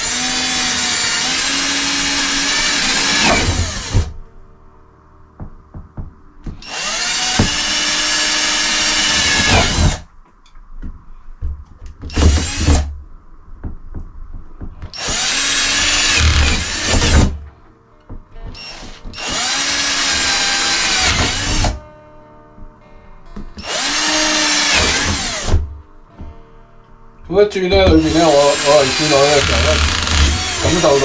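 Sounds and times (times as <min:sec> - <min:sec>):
power drill boring: 0:00.0 - 0:04.2, 0:06.5 - 0:10.1, 0:12.0 - 0:12.9, 0:14.9 - 0:17.5, 0:18.4 - 0:21.8, 0:23.6 - 0:25.7, 0:27.7 - 0:31.0
light ticks and knocks: 0:10.2 - 0:22.0.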